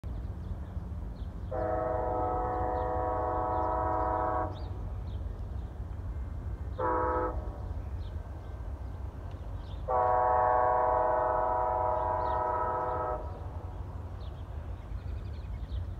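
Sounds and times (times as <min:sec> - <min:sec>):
train air horn blasts: 0:01.5 - 0:04.8, 0:06.8 - 0:07.8, 0:09.9 - 0:13.4.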